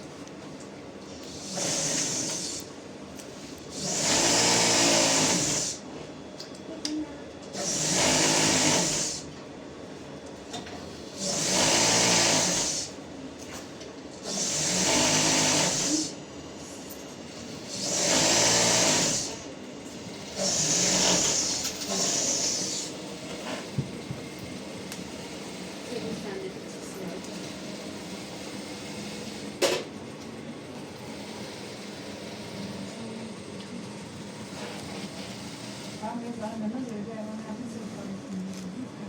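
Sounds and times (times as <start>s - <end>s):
electric sewing machine stitching: 1.3s - 2.7s, 3.7s - 5.8s, 7.5s - 9.3s, 11.0s - 13.0s, 14.2s - 16.2s, 17.4s - 23.8s, 27.2s - 29.9s, 30.8s - 33.3s, 34.2s - 36.2s.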